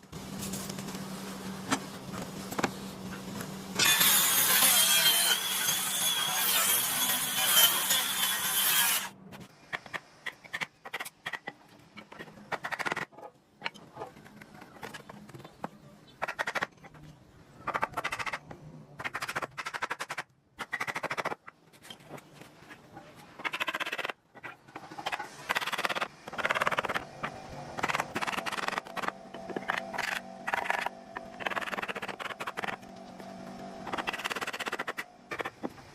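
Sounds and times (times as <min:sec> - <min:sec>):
power saw cutting wood: 0:03.8 - 0:09.1.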